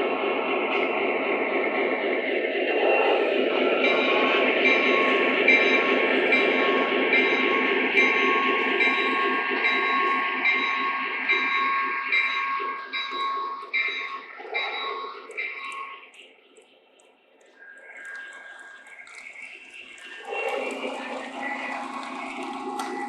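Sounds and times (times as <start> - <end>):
model train rumbling on track: 0.0 - 23.0
bell-like ring: 3.9 - 16.1.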